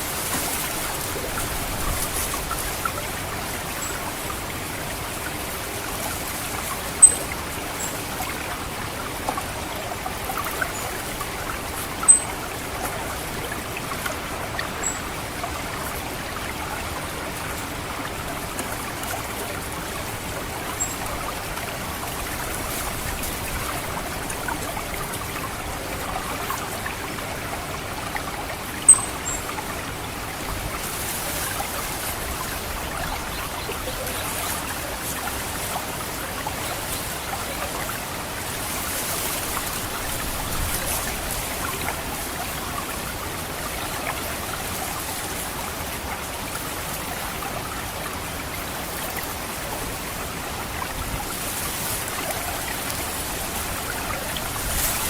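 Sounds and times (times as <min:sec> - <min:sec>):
water trickling: 0:00.0 - 0:55.0
sharp high bird calls: 0:07.0 - 0:07.3, 0:12.0 - 0:12.4, 0:28.9 - 0:29.5.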